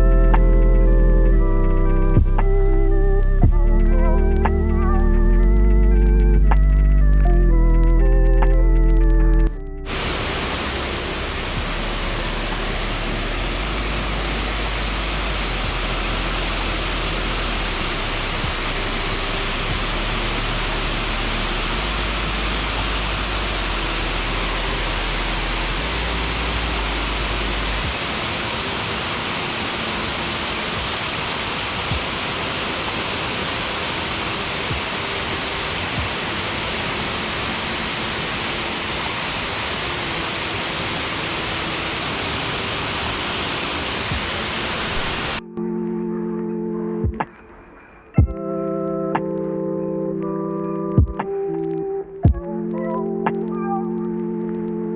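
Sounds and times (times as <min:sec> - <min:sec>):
faint low tones: 0:00.0 - 0:28.5
waterfall rushing: 0:09.8 - 0:45.4.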